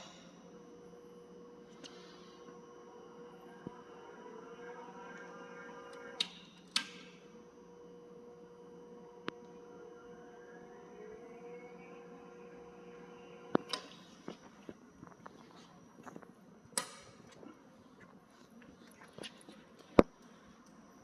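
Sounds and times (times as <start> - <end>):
electric motor humming: 0.0 - 6.3, 7.1 - 16.3.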